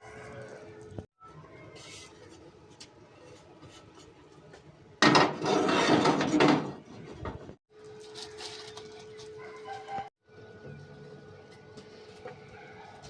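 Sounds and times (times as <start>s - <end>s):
utensils clattering against dishes: 5.0s - 6.8s.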